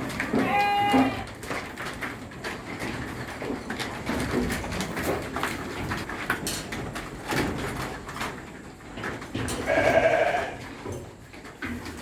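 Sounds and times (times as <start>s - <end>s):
sheep bleating: 0.3s - 1.3s, 9.6s - 10.6s.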